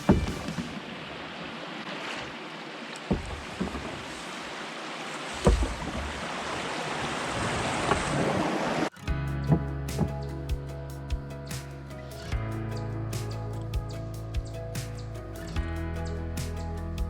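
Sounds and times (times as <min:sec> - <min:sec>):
dull knocks on canoe: 0:00.0 - 0:00.9, 0:03.0 - 0:04.2, 0:05.3 - 0:06.2
water rushing over creek drop: 0:00.0 - 0:10.7.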